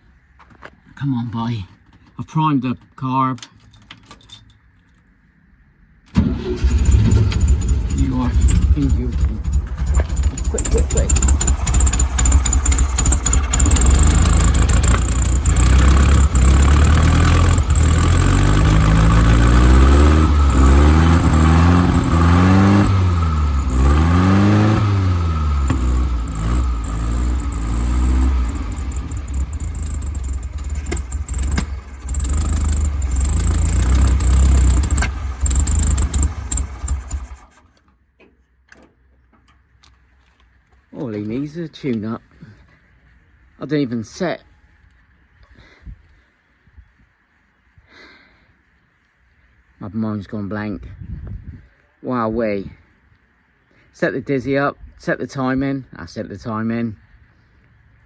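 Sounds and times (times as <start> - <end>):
man talking: 1.0 - 3.5, 7.9 - 11.2, 40.9 - 42.3, 43.6 - 44.4, 49.8 - 50.9, 52.0 - 52.8, 54.0 - 57.0
car engine revving: 6.2 - 37.5.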